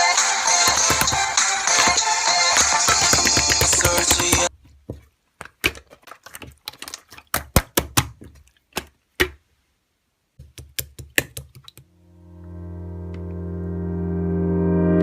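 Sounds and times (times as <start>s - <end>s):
music with synthesizer chords: 0.0s - 4.5s, 12.0s - 15.0s.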